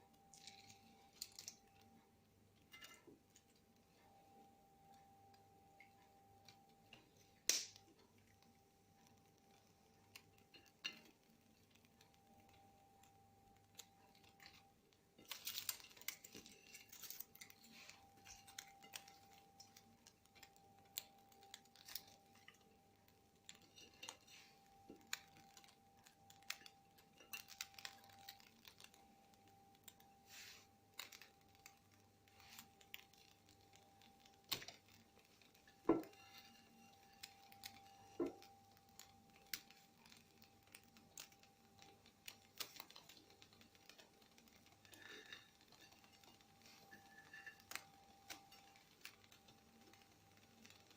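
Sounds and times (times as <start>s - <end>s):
faint steady hum: 0.0s - 50.9s.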